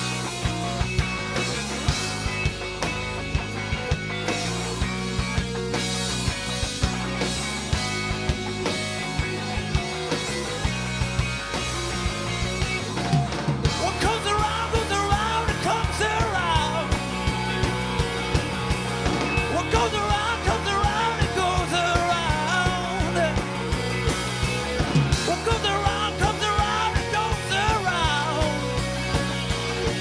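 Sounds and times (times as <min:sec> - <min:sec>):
bass: 0:00.0 - 0:30.0
drum beat: 0:00.0 - 0:30.0
wavering melodic lead line: 0:00.0 - 0:30.0.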